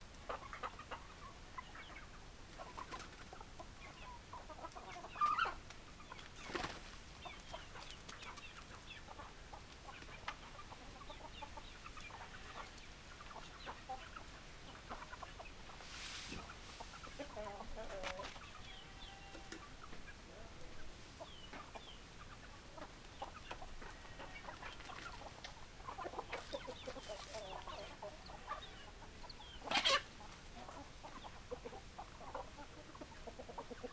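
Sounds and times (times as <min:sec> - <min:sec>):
hens clucking: 0:00.1 - 0:33.9.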